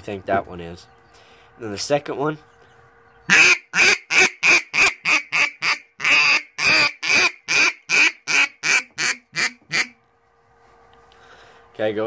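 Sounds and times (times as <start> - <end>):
duck call quacks: 3.3 - 10.0.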